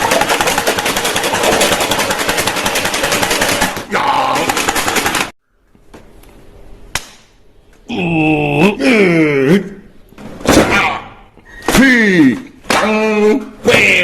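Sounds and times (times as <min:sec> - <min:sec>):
automatic machine-gun fire: 0:00.0 - 0:05.4.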